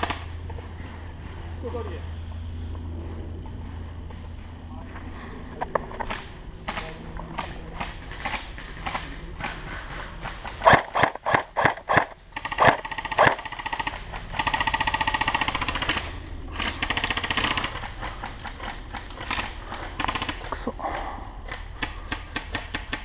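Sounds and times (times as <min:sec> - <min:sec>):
airsoft full-auto bursts: 0:00.0 - 0:00.3, 0:06.1 - 0:20.6, 0:21.5 - 0:23.0
airsoft gun single shots: 0:10.6 - 0:13.4.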